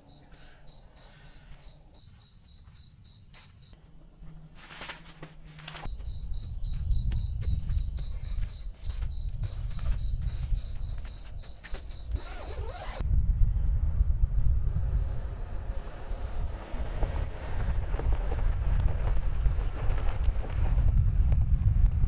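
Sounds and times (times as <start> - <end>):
insect chirping: 0.0 - 4.0, 5.8 - 13.0.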